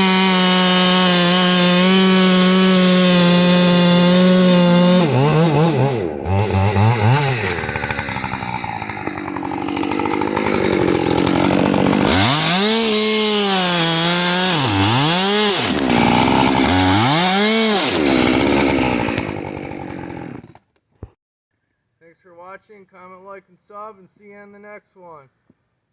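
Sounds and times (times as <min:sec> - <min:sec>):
chainsaw revving and cutting wood: 0:00.0 - 0:20.7.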